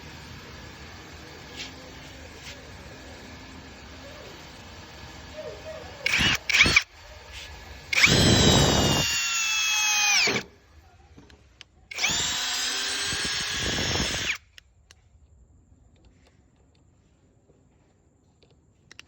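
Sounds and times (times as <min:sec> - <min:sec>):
cordless drill motor whine: 0:00.0 - 0:10.5, 0:11.9 - 0:14.5.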